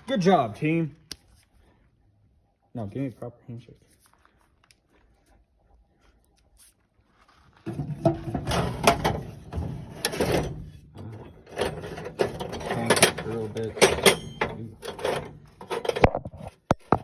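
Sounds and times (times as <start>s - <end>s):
rummaging through tools: 7.5s - 17.0s
tool box drawer opening: 7.7s - 17.0s.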